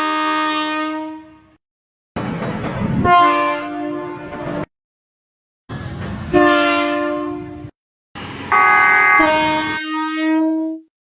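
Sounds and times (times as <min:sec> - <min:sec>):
rushing noise: 0:08.2 - 0:09.7
electric train horn: 0:08.5 - 0:10.8.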